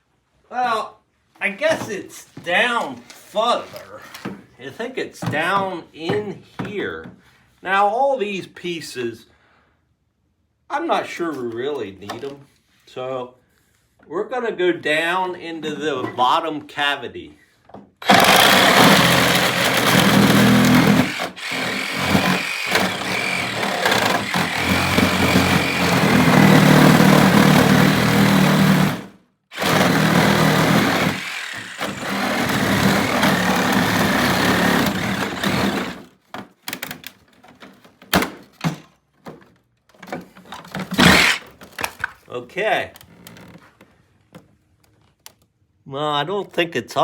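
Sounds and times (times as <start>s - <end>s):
motor machine whirring: 18.0s - 28.0s, 28.7s - 36.0s, 41.0s - 41.5s.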